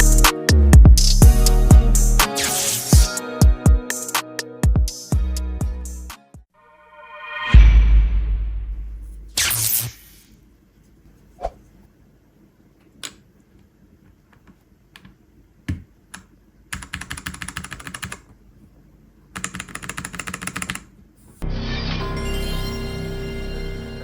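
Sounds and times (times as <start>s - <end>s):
music: 0.0s - 8.9s, 21.4s - 24.0s
mechanical keyboard typing: 16.1s - 18.3s, 19.4s - 20.9s.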